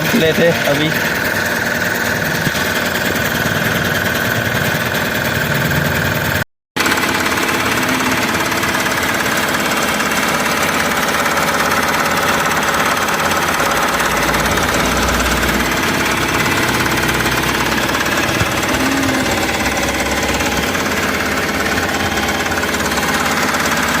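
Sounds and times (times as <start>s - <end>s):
engine running with knocking: 0.0s - 24.0s.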